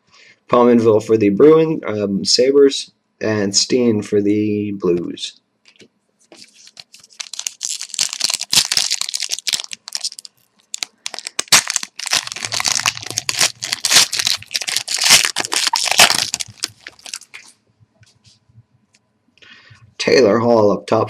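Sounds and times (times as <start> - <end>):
wrapper being torn and crinkled: 6.4 - 17.5.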